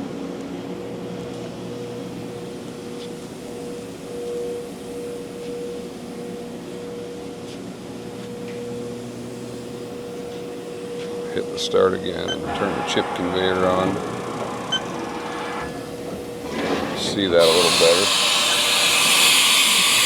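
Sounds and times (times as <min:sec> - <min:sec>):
machining center humming: 0:11.4 - 0:20.0.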